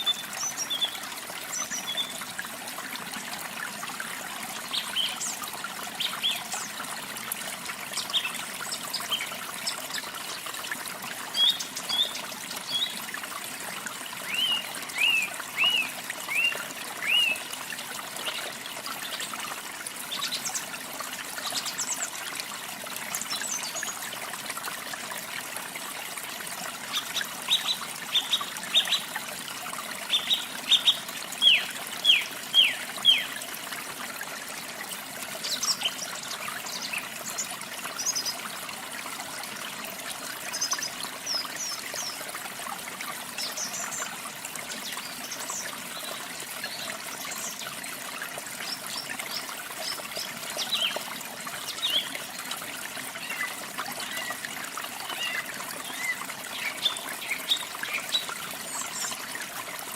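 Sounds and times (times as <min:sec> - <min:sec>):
songbirds singing: 0:00.0 - 0:02.3, 0:11.3 - 0:13.3, 0:14.2 - 0:17.6, 0:26.8 - 0:29.2, 0:30.0 - 0:33.4, 0:48.6 - 0:52.2, 0:53.2 - 0:59.2
small waterfall rushing: 0:00.0 - 0:59.9.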